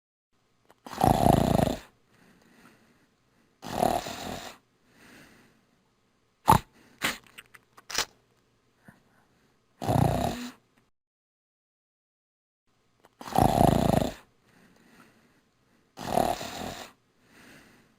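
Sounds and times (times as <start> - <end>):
person snoring: 0.9 - 1.9, 3.6 - 4.6, 9.8 - 10.6, 13.2 - 14.3, 16.0 - 17.0
short sharp snorts: 6.4 - 7.3, 9.8 - 10.6, 13.2 - 14.2, 16.0 - 17.0.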